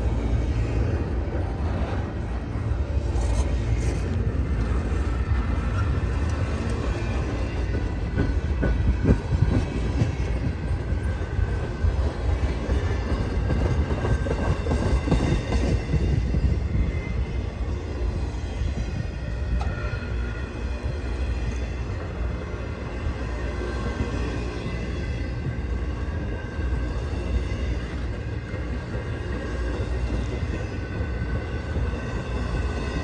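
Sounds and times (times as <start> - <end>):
train rumble: 0.0 - 33.0.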